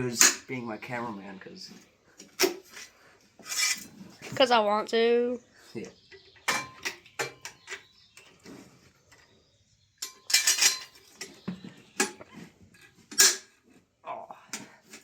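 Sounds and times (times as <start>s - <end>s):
metal hand tools clinking: 3.5s - 3.9s, 10.0s - 11.4s.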